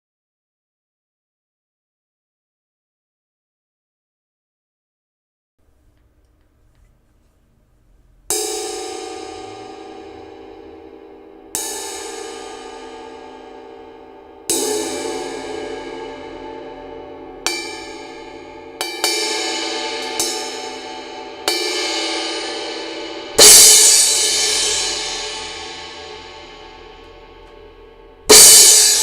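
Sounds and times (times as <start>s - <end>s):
crash cymbal ringing: 8.3s - 29.0s
light cymbal taps: 26.6s - 28.2s.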